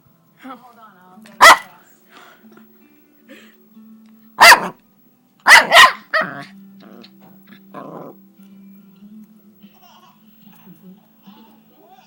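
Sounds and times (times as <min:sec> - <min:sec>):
dog barking: 0:01.4 - 0:01.7, 0:04.4 - 0:04.8, 0:05.5 - 0:06.5.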